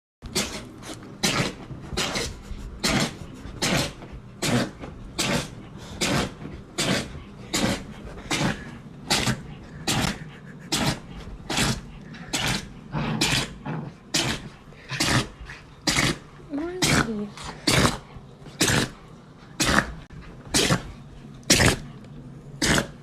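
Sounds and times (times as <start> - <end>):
dog sneezing: 0.3 - 11.8, 19.6 - 20.0.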